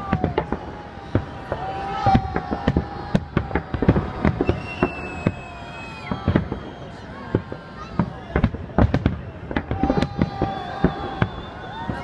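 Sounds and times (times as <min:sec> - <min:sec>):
fireworks bangs: 0:00.0 - 0:12.0
fireworks whistling tone: 0:00.0 - 0:12.0.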